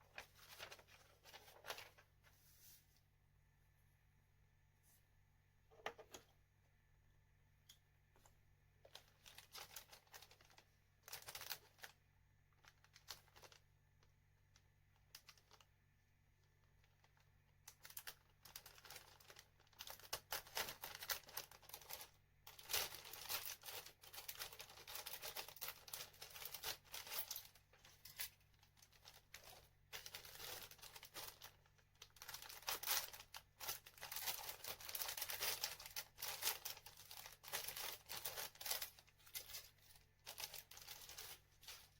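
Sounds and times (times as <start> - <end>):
plastic packaging crinkling: 0.0 - 2.1, 8.8 - 14.1, 14.9 - 15.7, 16.6 - 41.9.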